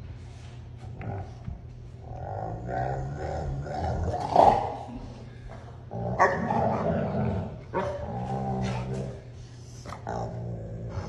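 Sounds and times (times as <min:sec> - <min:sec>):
dog barking and growling: 0:02.1 - 0:05.0, 0:05.9 - 0:09.3.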